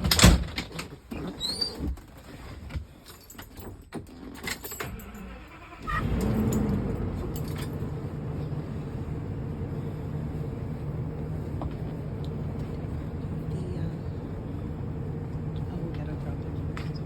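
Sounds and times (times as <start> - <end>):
motorhome engine idling: 5.3 - 17.0.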